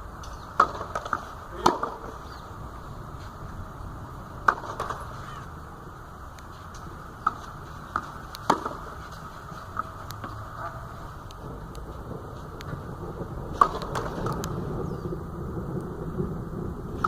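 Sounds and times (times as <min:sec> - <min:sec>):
tennis ball struck and bouncing: 0:00.3 - 0:02.1, 0:04.4 - 0:05.2, 0:06.8 - 0:10.6, 0:13.5 - 0:14.4.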